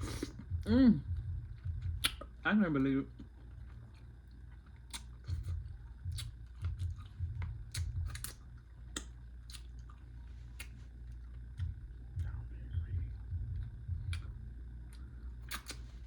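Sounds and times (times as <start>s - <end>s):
low hum: 0.0s - 16.0s
close chewing with mouth smacks: 1.6s - 2.3s, 3.2s - 12.4s, 13.6s - 16.0s.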